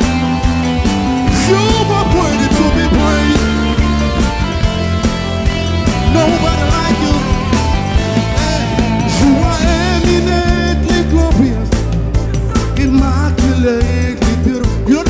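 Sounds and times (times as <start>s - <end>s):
wavering lead melody: 0.0s - 11.6s
drum beat: 0.0s - 15.0s
heavy bass: 0.0s - 15.0s.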